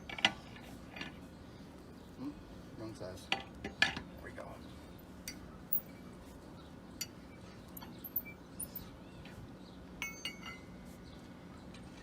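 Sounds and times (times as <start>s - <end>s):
lug wrench clinking on lug nuts: 10.0s - 10.7s.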